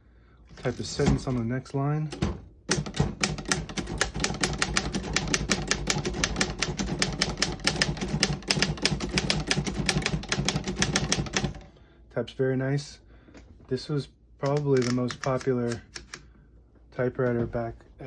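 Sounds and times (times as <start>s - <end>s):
typewriter typing: 2.2s - 11.7s, 14.5s - 16.2s.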